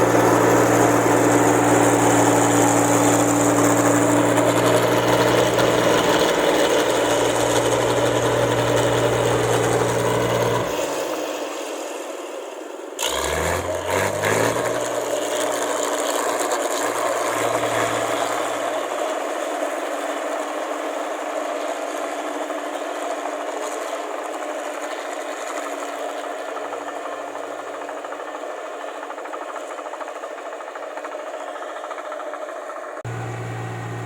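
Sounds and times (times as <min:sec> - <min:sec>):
diesel engine revving: 0:00.0 - 0:11.1, 0:13.0 - 0:19.1, 0:33.0 - 0:34.0.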